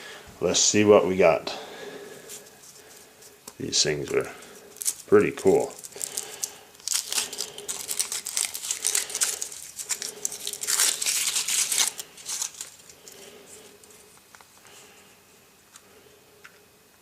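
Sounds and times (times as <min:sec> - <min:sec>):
foil wrapper crinkling: 0:04.0 - 0:14.8.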